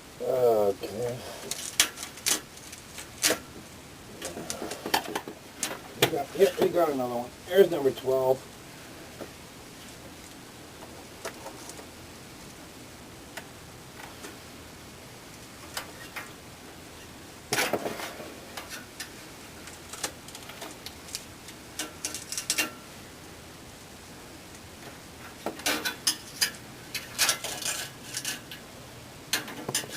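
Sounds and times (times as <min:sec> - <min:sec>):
scraping rattle in metal box: 0:25.6 - 0:28.6.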